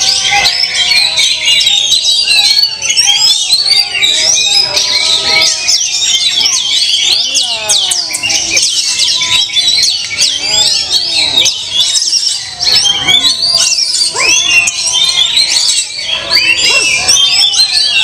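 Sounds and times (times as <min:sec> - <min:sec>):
songbirds chorus chirping: 0:00.0 - 0:18.0.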